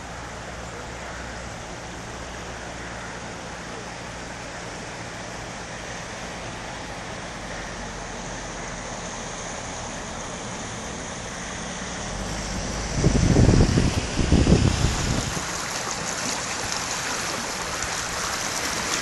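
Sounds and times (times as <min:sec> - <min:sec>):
flooded river rushing: 0:00.0 - 0:19.0
low rumble: 0:12.0 - 0:15.6.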